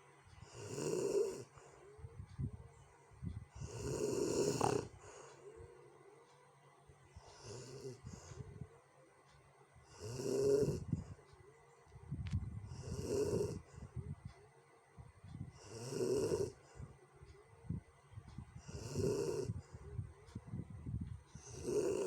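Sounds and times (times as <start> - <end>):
person snoring: 0.4 - 1.8, 3.5 - 5.8, 7.2 - 8.6, 9.9 - 11.1, 12.7 - 14.0, 15.6 - 16.7, 18.6 - 19.9, 21.3 - 22.0.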